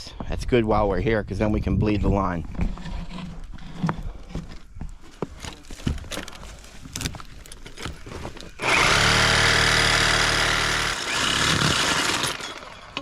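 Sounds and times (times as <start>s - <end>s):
power tool running: 8.6s - 13.0s.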